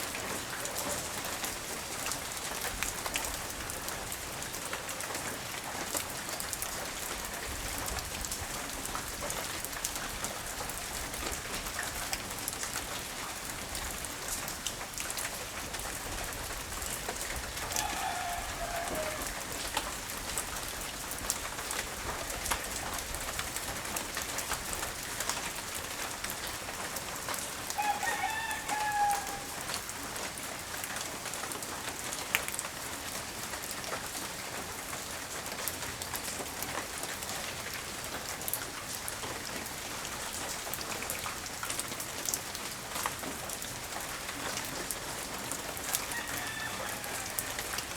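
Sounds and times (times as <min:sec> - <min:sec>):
light rain pattering: 0:00.0 - 0:47.9
rooster crowing: 0:17.6 - 0:19.6, 0:27.8 - 0:29.7, 0:45.9 - 0:47.9.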